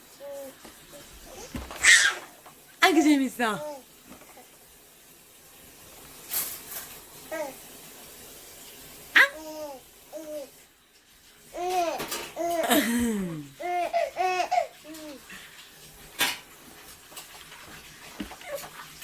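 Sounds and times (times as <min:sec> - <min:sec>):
baby laughing in squeals: 0:01.3 - 0:02.3.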